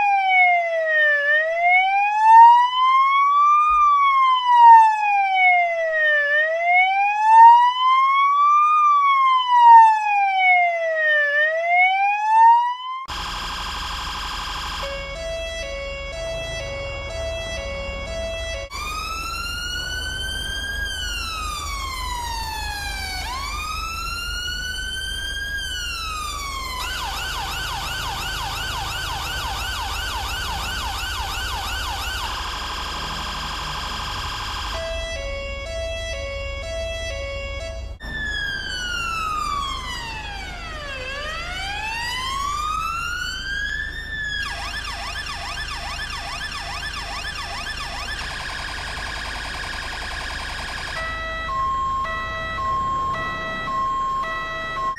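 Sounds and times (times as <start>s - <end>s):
police siren wailing: 0.0s - 54.9s
second siren yelping: 0.0s - 54.9s
low vehicle rumble: 13.1s - 54.9s.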